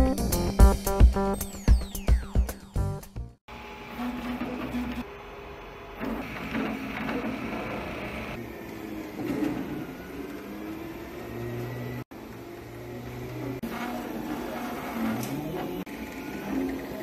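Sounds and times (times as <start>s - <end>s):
printer stepper motors whining: 3.5s - 17.0s.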